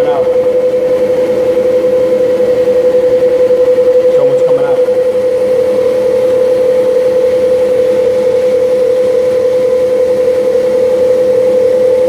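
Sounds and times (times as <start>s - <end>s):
electric food grinder running: 0.0s - 12.0s.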